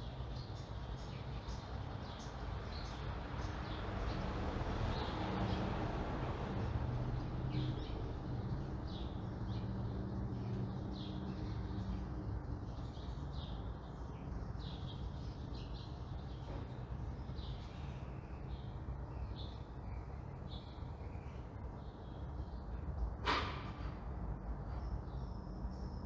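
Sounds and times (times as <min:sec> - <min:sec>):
small birds chirping: 0:00.0 - 0:05.7, 0:06.5 - 0:23.2, 0:24.6 - 0:26.0
low rumble of traffic: 0:00.0 - 0:26.0
vehicle passing: 0:03.3 - 0:12.8.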